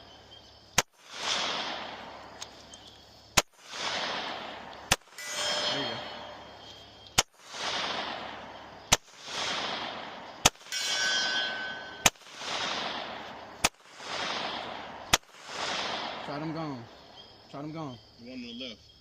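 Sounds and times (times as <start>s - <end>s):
pistol shots with echo: 0.8s - 17.3s
steel target ringing: 5.1s - 6.6s, 10.6s - 12.1s.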